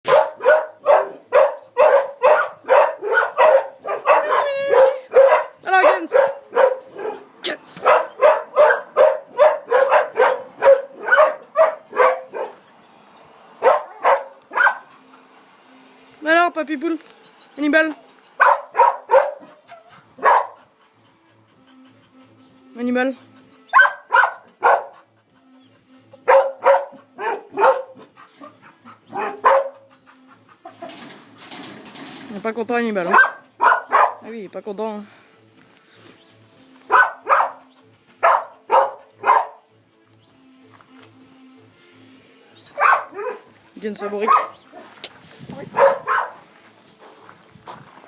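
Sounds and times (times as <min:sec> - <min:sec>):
dog barking: 0:00.0 - 0:12.6, 0:13.6 - 0:14.9, 0:18.4 - 0:20.6, 0:23.7 - 0:25.1, 0:26.2 - 0:29.9, 0:33.1 - 0:34.2, 0:36.9 - 0:37.6, 0:38.2 - 0:39.6, 0:42.7 - 0:44.9, 0:45.7 - 0:46.4.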